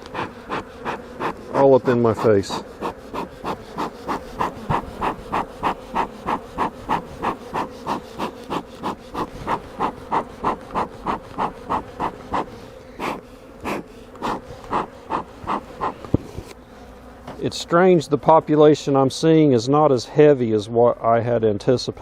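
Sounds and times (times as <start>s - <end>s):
loud regular puffing: 0.0s - 17.3s
honey bees buzzing: 0.0s - 19.4s.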